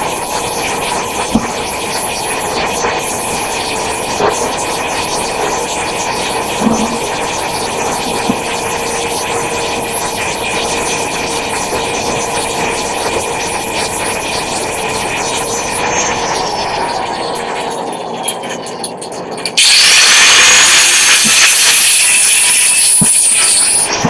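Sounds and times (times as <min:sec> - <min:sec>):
power tool motor whine on steel: 0:00.0 - 0:17.5, 0:19.6 - 0:24.0.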